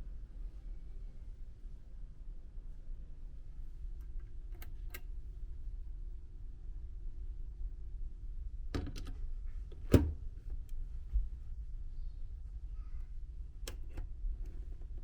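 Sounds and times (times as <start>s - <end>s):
sharp clicks and knocks: 13.6s - 15.0s.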